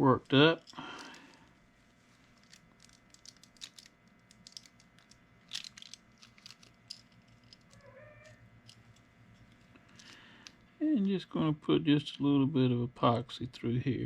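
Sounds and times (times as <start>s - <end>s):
low steady hum: 0.0s - 14.0s
small tools clicking and tapping: 2.4s - 10.6s.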